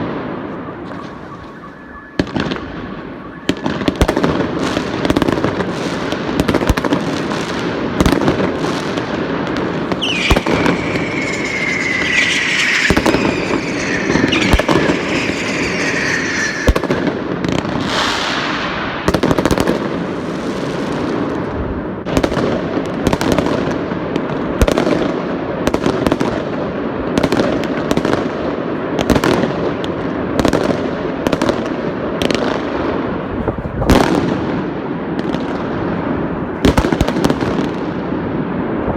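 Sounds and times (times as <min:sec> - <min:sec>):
falling firework whistles: 0:00.0 - 0:05.4, 0:08.8 - 0:19.7
fireworks crackling: 0:00.0 - 0:21.4
fireworks exploding: 0:00.0 - 0:33.2, 0:33.9 - 0:38.9.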